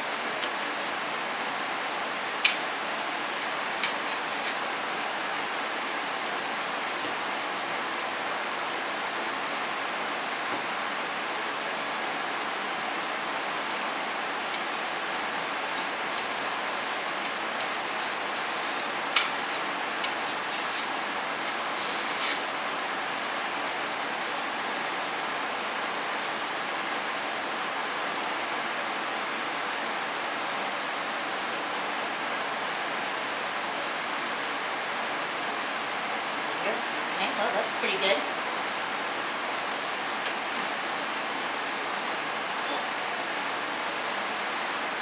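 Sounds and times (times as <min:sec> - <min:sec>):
steady hiss: 0:00.0 - 0:22.9
rubbing scrapes: 0:02.4 - 0:04.7, 0:13.4 - 0:20.9, 0:21.5 - 0:22.4.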